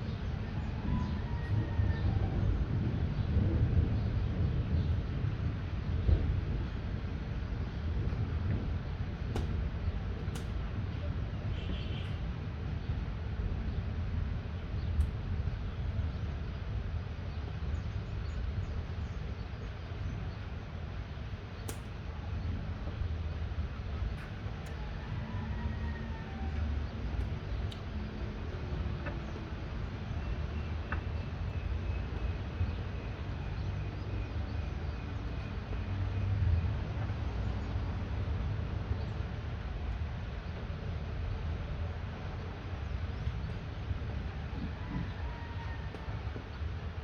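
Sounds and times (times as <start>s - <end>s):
sharp tap: 9.3s - 9.6s.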